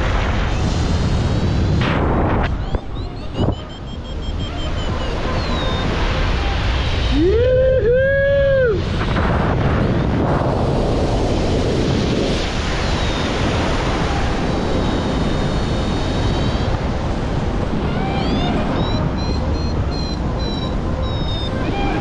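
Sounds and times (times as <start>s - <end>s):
person yelling whoo: 7.1s - 8.9s.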